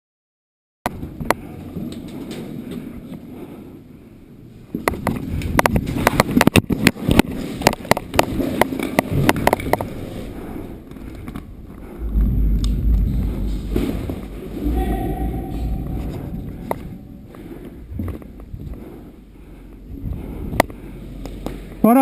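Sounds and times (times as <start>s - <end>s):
rustling movement: 5.4s - 21.8s.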